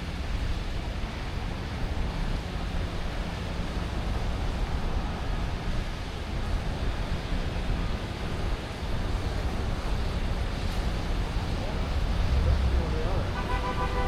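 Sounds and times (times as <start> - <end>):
distant traffic noise: 8.2 - 14.0
low fluttering rumble: 9.0 - 14.0.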